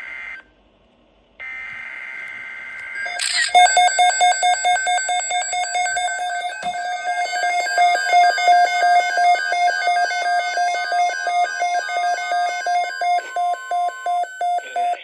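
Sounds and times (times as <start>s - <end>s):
electronic two-tone alarm: 2.9s - 15.0s.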